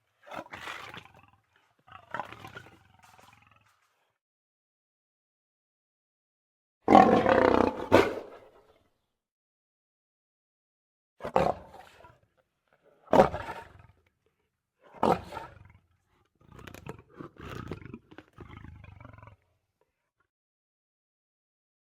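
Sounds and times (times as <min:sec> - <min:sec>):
lion roaring: 0:06.9 - 0:08.5, 0:13.1 - 0:14.0, 0:14.9 - 0:19.5.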